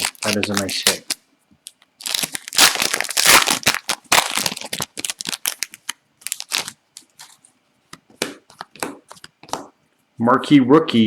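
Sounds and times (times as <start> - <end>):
foil wrapper crinkling: 0.0 - 7.5.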